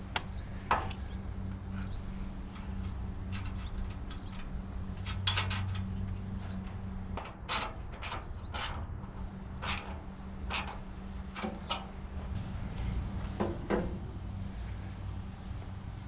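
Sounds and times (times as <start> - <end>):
steady low hum: 0.0 - 16.0
clicks knocks and scrapes of parts: 0.1 - 12.4.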